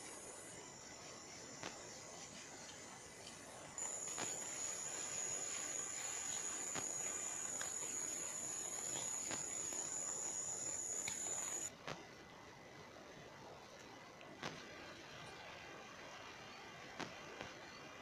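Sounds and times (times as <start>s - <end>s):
insect high-pitched buzzing: 0.0s - 11.7s
faint clicks: 11.0s - 11.7s.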